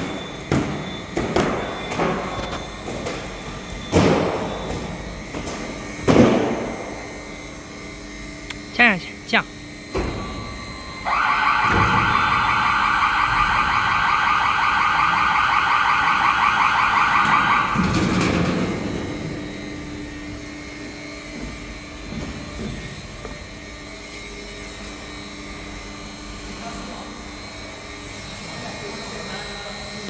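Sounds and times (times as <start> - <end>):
pulsing electronic alarm: 0.0 - 6.0, 9.6 - 23.8
low machine hum: 0.0 - 24.8.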